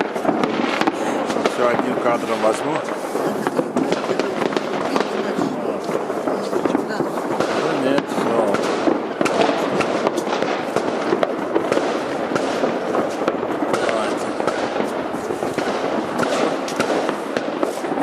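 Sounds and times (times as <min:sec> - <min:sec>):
fireworks bursting and crackling: 0:00.0 - 0:18.0.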